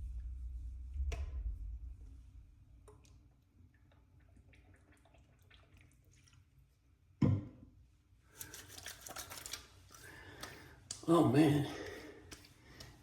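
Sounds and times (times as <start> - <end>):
faint wet dabs and drips: 0.2 - 7.2, 8.2 - 11.1, 11.7 - 13.0
quick crackly pats on skin: 12.3 - 13.0.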